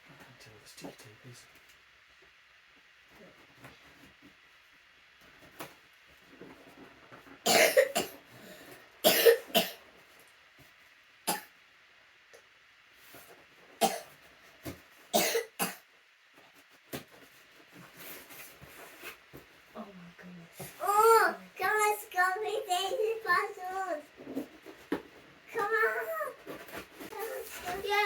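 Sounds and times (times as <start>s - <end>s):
person coughing: 7.5s - 8.1s, 9.1s - 9.8s, 15.2s - 15.8s.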